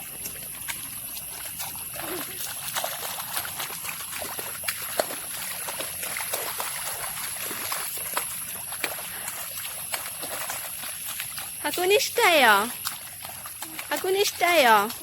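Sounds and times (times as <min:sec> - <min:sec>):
small water splashes: 0:00.0 - 0:15.0.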